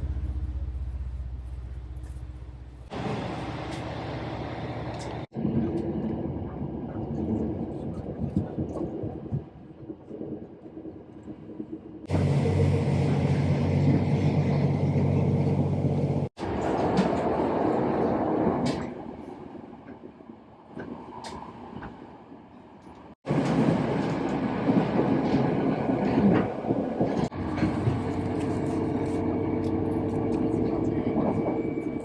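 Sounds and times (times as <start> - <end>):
low hum: 0.0 - 5.7
train rumbling: 0.0 - 32.0.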